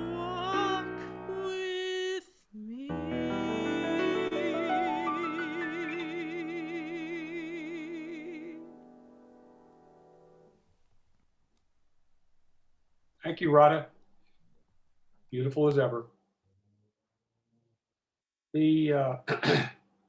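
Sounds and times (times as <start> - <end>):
classical singer with vibrato: 0.0 - 8.8.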